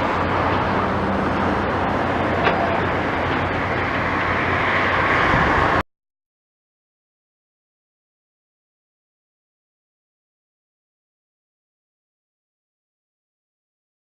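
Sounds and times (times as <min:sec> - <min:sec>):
engine humming: 0:00.0 - 0:05.8.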